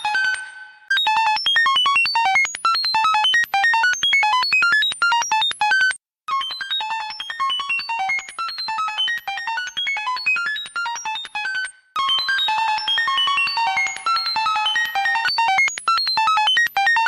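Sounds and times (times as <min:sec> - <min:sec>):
synthesized electronic beeps: 0:12.0 - 0:17.0.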